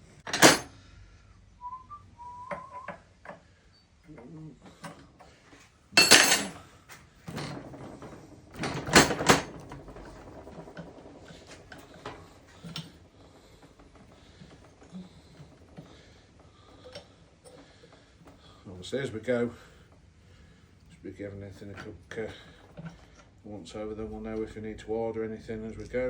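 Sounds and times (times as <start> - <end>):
metal hand tools clanking: 0.2 - 0.7, 6.0 - 6.6.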